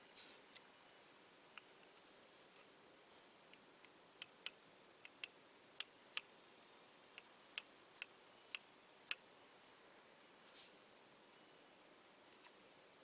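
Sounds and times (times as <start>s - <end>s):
faint sharp ticks: 3.5s - 6.3s.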